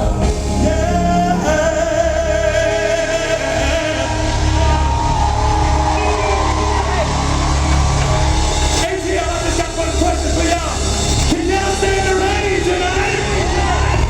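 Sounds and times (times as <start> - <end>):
person singing lead vocal: 0.0 - 7.0, 11.3 - 14.0
bass and drum groove: 0.0 - 14.0
live band music over pa: 0.0 - 14.0.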